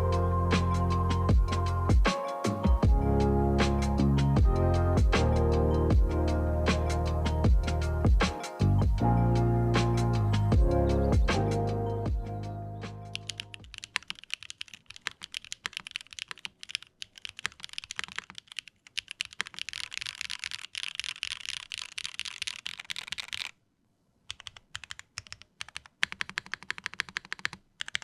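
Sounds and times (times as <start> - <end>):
mechanical keyboard typing: 13.1 - 23.6, 24.3 - 28.0.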